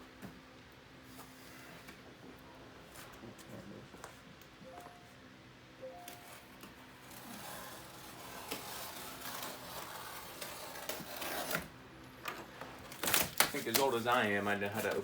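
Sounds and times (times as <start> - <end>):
cardboard box scraping and rubbing: 7.2 - 11.7.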